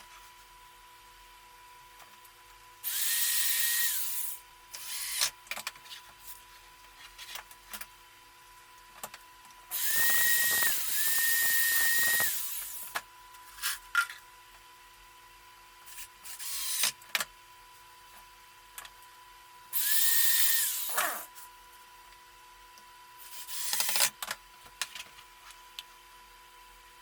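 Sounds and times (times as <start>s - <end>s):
electric hand drill whirring: 2.8s - 5.3s, 9.7s - 12.9s, 16.3s - 17.0s, 19.8s - 21.3s, 23.3s - 24.1s.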